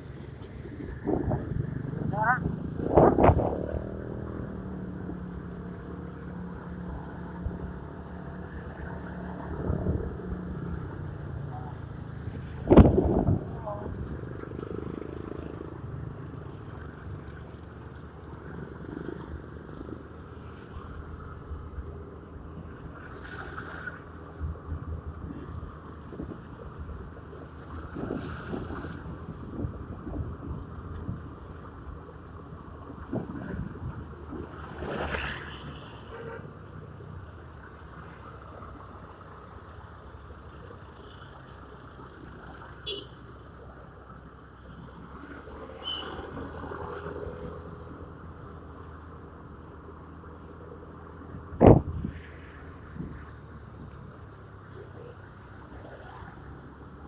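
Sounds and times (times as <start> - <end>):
motor scooter engine and road rumble: 0.0 - 57.0
scooter engine: 13.6 - 20.0.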